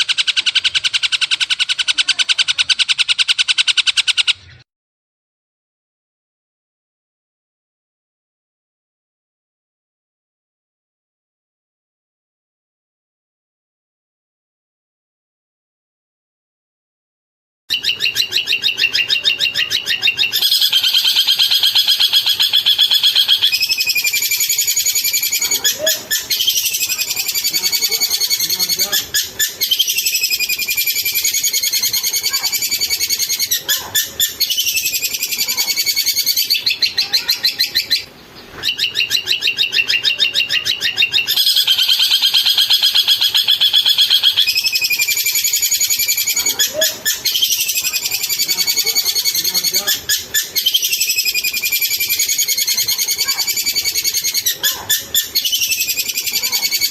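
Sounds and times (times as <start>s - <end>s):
bird chattering song: 0.0s - 4.6s, 17.7s - 56.9s.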